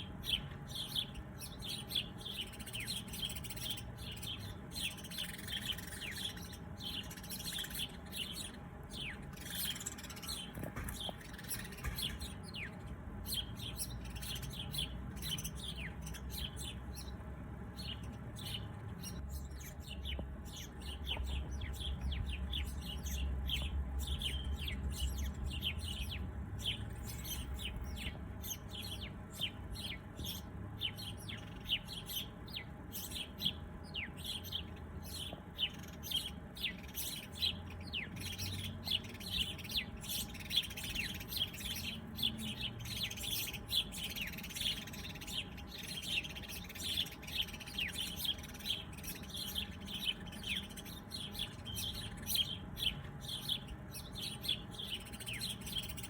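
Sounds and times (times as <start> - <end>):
small birds chirping: 0.0 - 56.0.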